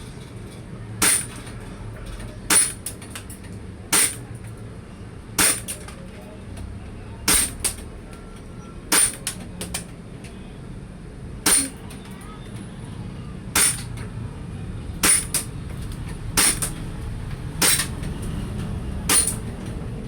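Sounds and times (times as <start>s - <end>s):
airsoft pistol shots: 11.5s - 11.8s, 13.6s - 13.9s, 15.0s - 15.5s, 16.4s - 16.8s.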